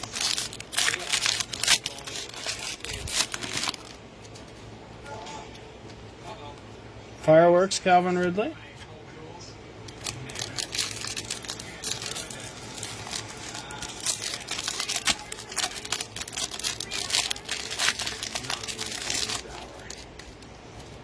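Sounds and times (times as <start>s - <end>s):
foil wrapper crinkling and tearing: 0.0s - 4.5s, 9.8s - 21.0s.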